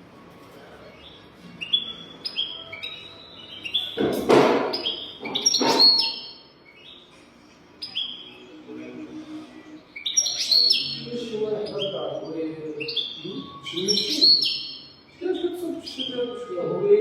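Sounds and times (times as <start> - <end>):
goldfinch twittering song: 1.0 - 7.1, 7.8 - 8.6, 9.9 - 16.5
harsh rasping bird calls: 1.0 - 8.6, 9.9 - 16.4.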